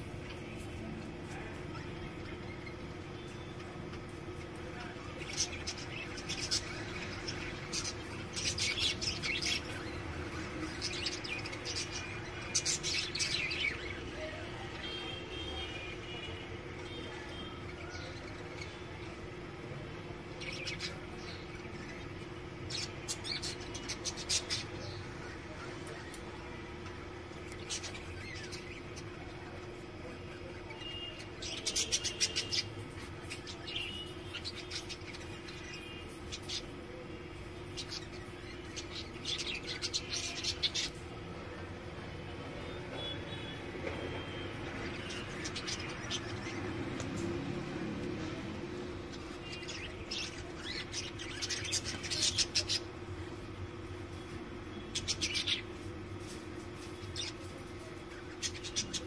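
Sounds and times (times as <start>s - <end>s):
budgerigars chirping: 55.0s - 55.8s.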